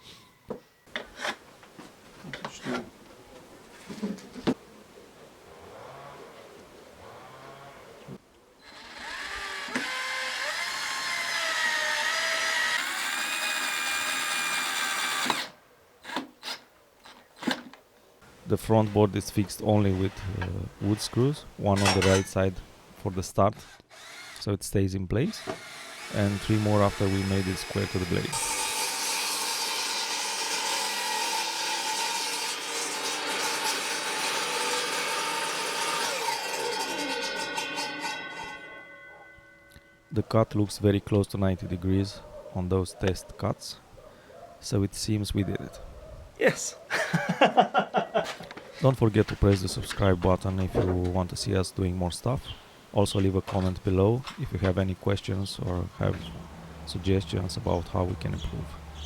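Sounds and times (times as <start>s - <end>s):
table saw cutting wood: 8.6s - 15.6s, 25.4s - 39.6s.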